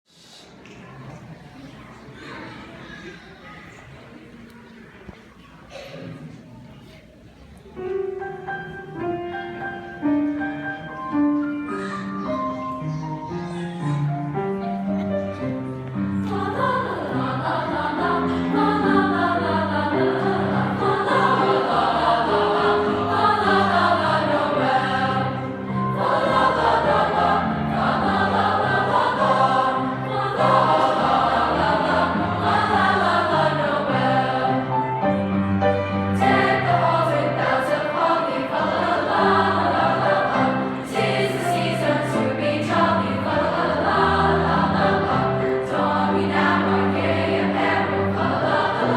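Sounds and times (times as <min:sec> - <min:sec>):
choir singing in parts: 0:16.0 - 0:48.9.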